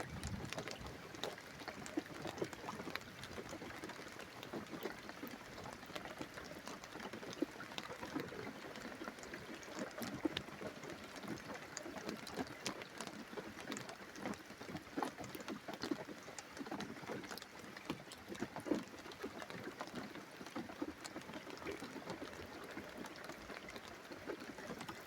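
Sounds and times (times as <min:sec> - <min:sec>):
steady rain: 0:00.0 - 0:15.1.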